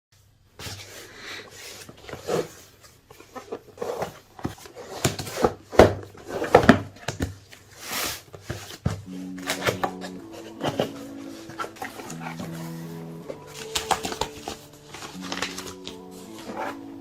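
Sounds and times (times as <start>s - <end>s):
cardboard box being opened: 7.7s - 17.0s
background music with held notes: 9.0s - 17.0s.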